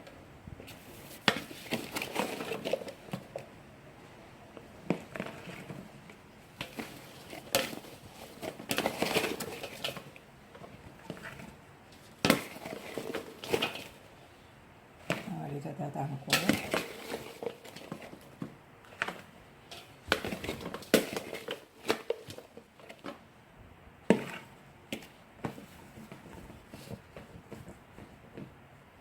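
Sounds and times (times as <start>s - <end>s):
plastic bags crinkling: 6.4s - 14.1s, 16.3s - 23.1s.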